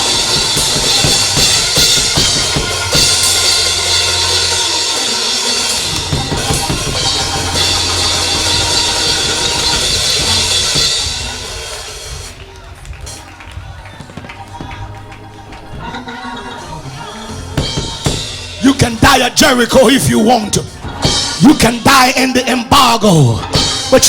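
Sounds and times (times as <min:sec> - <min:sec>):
sustained chords: 0:00.0 - 0:12.1
bass line: 0:00.0 - 0:24.0
drum kit: 0:00.0 - 0:24.0.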